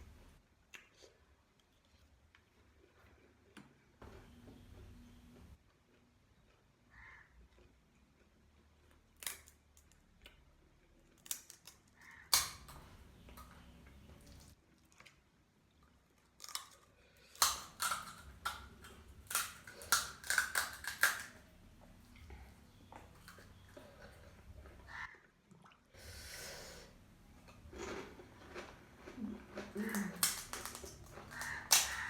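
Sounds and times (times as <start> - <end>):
crunching crisp food: 5.6 - 24.8, 27.4 - 32.0.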